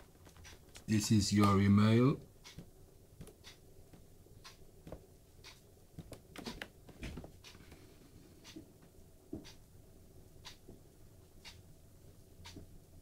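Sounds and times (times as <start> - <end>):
faint small clicks and taps: 2.4 - 7.8, 8.4 - 9.6, 12.4 - 12.7.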